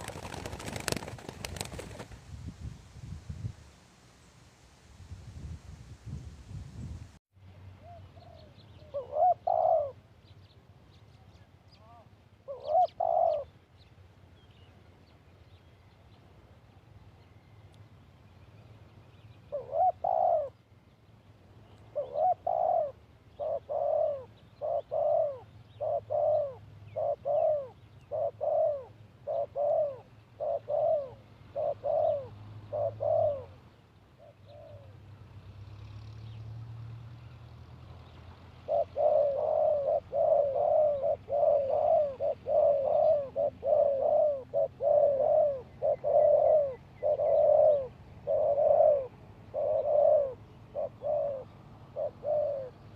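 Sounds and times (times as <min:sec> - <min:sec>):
dove cooing: 0:00.0 - 0:02.0, 0:07.8 - 0:10.1, 0:11.8 - 0:13.5, 0:19.5 - 0:20.6, 0:21.9 - 0:35.0, 0:38.6 - 0:52.9.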